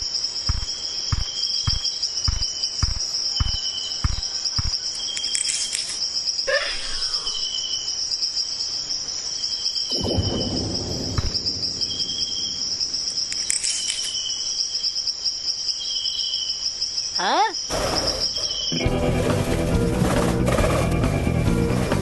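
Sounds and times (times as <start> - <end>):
soft low thumps: 0.0 - 4.8
insect chirping in short bursts: 0.0 - 18.8
crickets chirping: 0.0 - 18.9.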